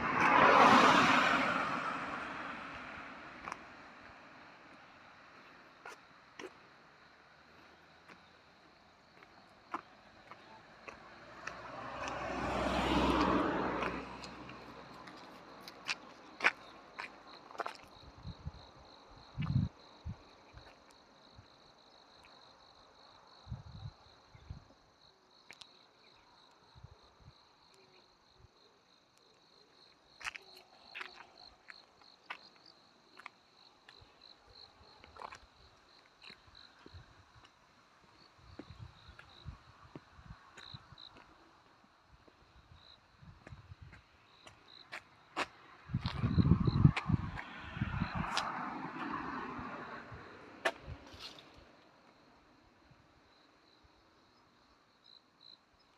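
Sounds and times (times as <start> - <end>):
vehicle passing by: 0.0 - 3.3, 10.8 - 15.4, 45.4 - 51.8
crickets chirping: 0.0 - 55.9.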